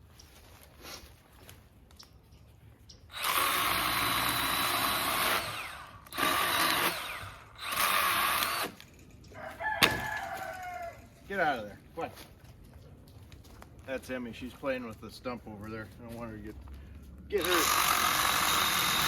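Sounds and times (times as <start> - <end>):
small chainsaw cutting wood: 3.1 - 9.0, 17.3 - 19.0.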